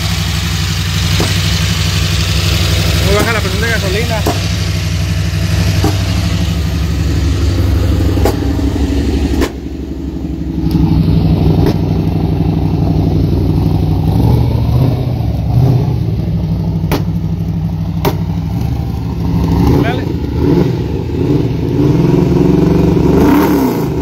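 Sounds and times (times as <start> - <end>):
engine popping cracks: 0.0 - 9.8, 10.5 - 12.8, 16.6 - 20.8
vee eight engine revving: 0.0 - 24.0.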